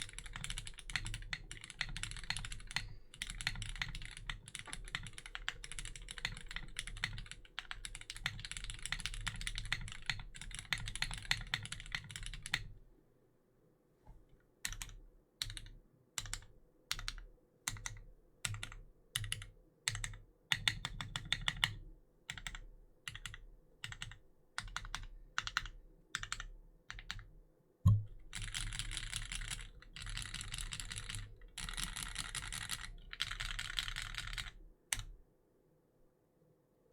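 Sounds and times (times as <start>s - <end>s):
mechanical keyboard typing: 0.0s - 12.7s, 14.7s - 27.3s, 27.9s - 35.1s
deep key thock: 27.9s - 28.2s.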